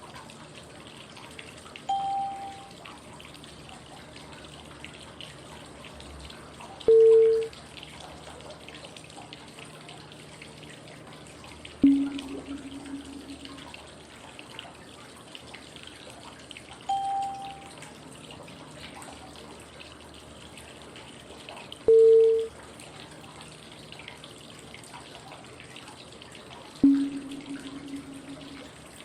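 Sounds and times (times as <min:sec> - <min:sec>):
flowing water white noise: 0:01.8 - 0:03.0, 0:11.8 - 0:13.9, 0:16.8 - 0:18.1, 0:26.8 - 0:29.0
short electronic cue tones: 0:01.9 - 0:02.8, 0:06.9 - 0:07.5, 0:11.8 - 0:13.7, 0:16.9 - 0:17.7, 0:21.9 - 0:22.5, 0:26.8 - 0:29.0.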